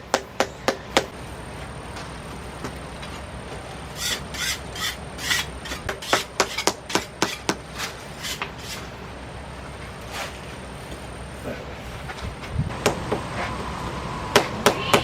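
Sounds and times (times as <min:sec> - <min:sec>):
rasping scrapes on bricks: 0:04.0 - 0:08.9.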